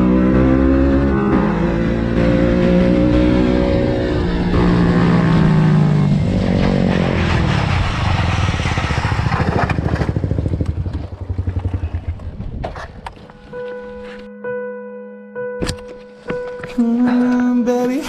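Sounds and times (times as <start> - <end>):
motorcycle engine revving: 0.0 - 13.4.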